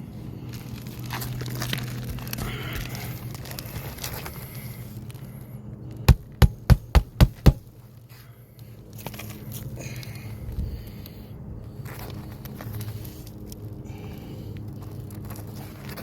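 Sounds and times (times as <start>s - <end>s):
low steady hum: 4.2s - 9.2s
sharp knocks: 6.1s - 7.6s.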